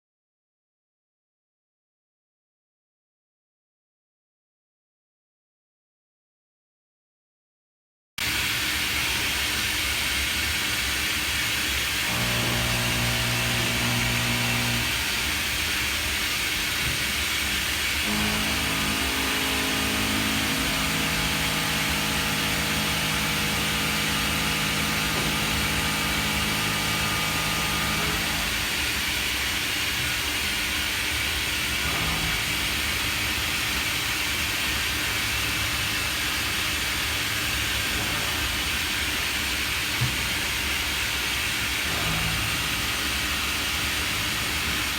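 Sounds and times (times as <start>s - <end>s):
steady machine tones: 12.0s - 15.6s, 18.0s - 29.0s.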